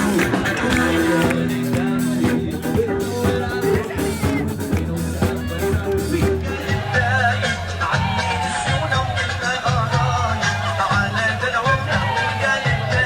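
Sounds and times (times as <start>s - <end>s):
sustained instrumental notes: 0.0s - 6.7s
steady drum beat: 0.0s - 13.0s.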